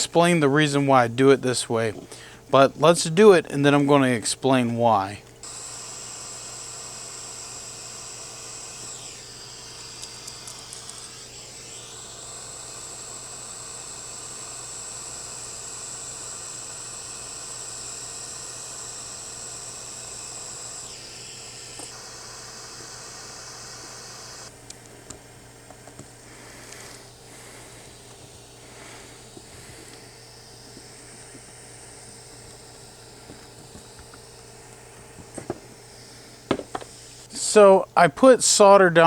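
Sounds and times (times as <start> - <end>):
heating tool hissing: 0.0 - 39.0
small clicks: 8.8 - 11.4, 21.6 - 22.0.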